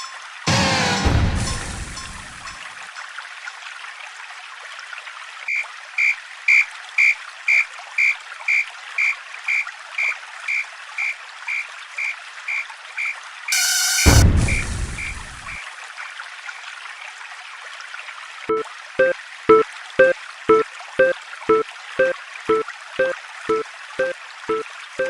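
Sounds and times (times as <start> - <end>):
level-crossing bell ringing: 18.5 - 24.6.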